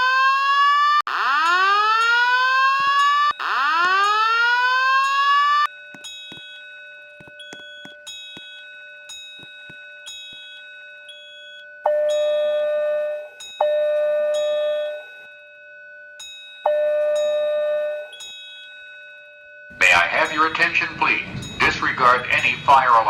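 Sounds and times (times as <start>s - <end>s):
loud sustained alarm tones: 0.0s - 5.7s, 19.7s - 23.0s
fire alarm electronic tone: 0.0s - 18.6s, 19.2s - 23.0s.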